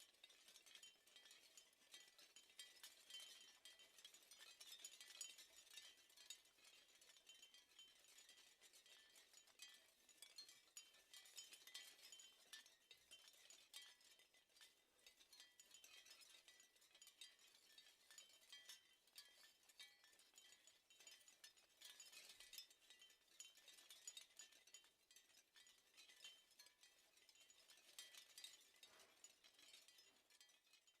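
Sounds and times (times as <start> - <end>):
wind chimes tinkling: 15.4 - 31.0.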